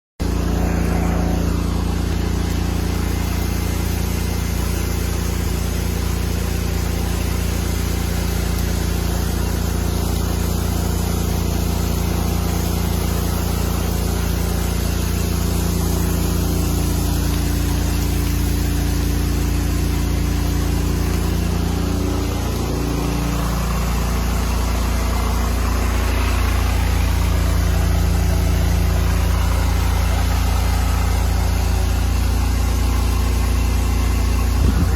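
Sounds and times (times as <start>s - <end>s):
pressure washer engine running: 0.2s - 34.9s.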